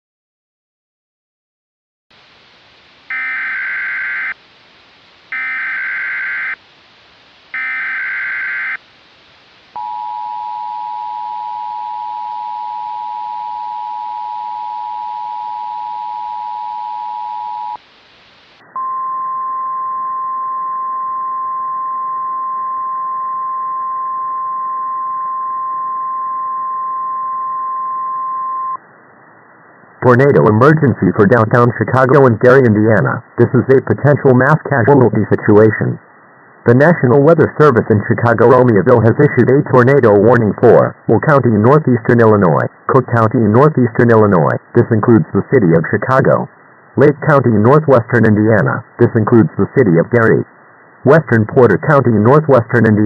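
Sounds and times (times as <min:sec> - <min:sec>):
two-tone attention signal: 0:03.1 - 0:04.3, 0:05.3 - 0:06.6, 0:09.8 - 0:17.8, 0:18.7 - 0:28.8
data bursts: 0:03.1 - 0:04.4, 0:05.3 - 0:06.6, 0:07.5 - 0:08.8.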